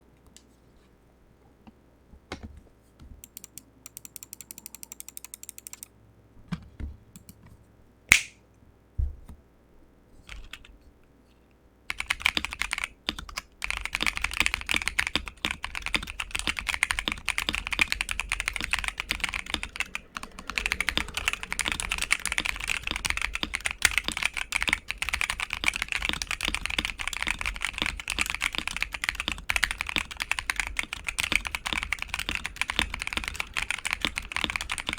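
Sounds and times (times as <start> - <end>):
typing on mechanical keyboard: 3.2 - 5.9, 10.3 - 10.6, 11.9 - 34.9.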